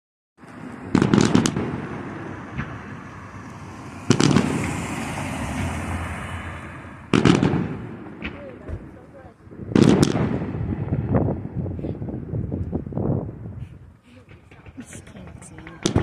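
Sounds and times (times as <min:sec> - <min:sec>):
fireworks exploding: 0:00.8 - 0:03.3, 0:04.1 - 0:05.7, 0:07.1 - 0:11.2, 0:14.2 - 0:16.0
echoing rumble: 0:14.2 - 0:16.0.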